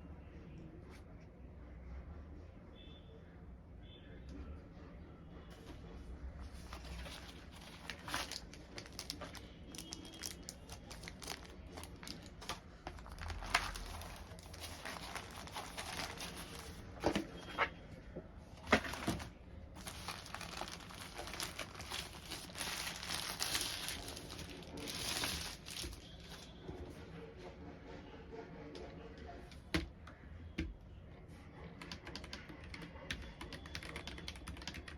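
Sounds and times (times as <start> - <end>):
packaging crinkling and rustling: 6.6 - 17.7, 18.6 - 26.6.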